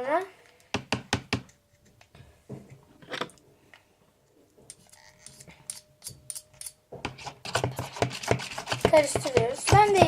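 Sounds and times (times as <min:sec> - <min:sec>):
teaspoon tapping plastic container: 0:07.0 - 0:10.0.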